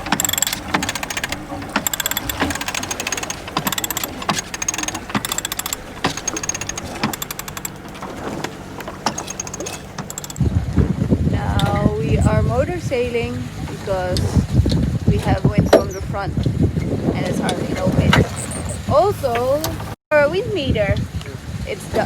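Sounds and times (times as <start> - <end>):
winch ratcheting clicks: 0.0 - 10.4.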